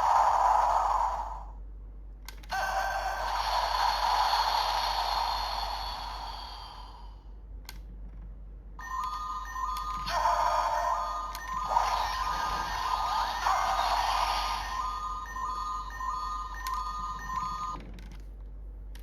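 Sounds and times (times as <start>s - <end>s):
shimmering electronic chime: 8.8s - 17.8s
toy click: 16.5s - 16.9s.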